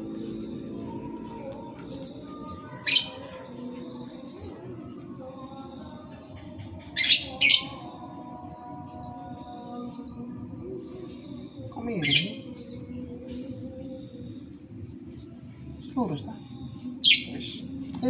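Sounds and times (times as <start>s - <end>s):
low steady hum: 0.0s - 6.9s
small birds chirping: 0.0s - 8.0s, 11.0s - 14.7s, 16.8s - 18.0s.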